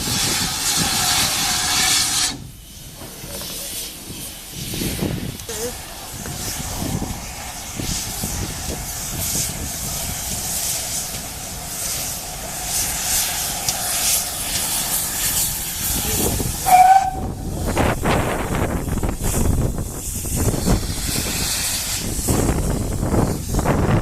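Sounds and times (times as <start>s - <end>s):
loud steam puffs: 0.0s - 24.0s
steam locomotive hissing: 0.0s - 24.0s
train whistle toot: 16.6s - 17.4s.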